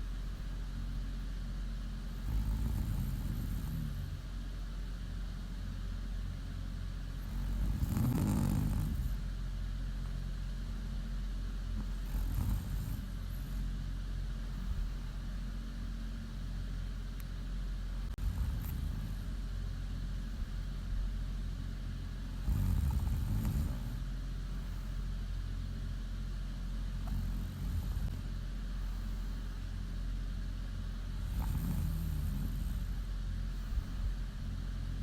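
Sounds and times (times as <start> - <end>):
steady low hum: 0.0 - 35.0
woman snoring: 2.1 - 4.3, 7.2 - 9.3, 11.8 - 13.6, 18.1 - 19.4, 22.3 - 24.0, 27.0 - 28.2, 31.1 - 34.0.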